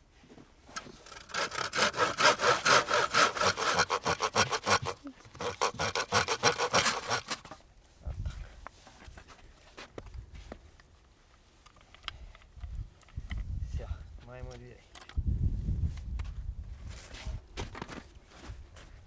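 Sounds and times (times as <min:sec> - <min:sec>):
hand saw cutting wood: 0:00.7 - 0:07.6.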